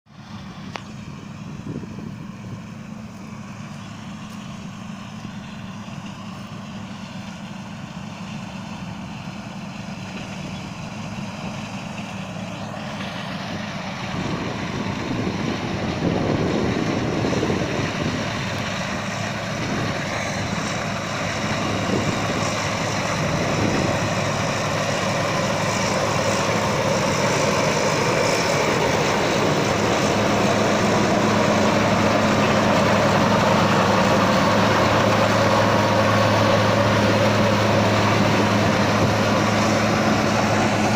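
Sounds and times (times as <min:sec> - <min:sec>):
combine harvester engine hum: 0:00.1 - 0:40.9
threshing machinery rushing: 0:09.8 - 0:40.9.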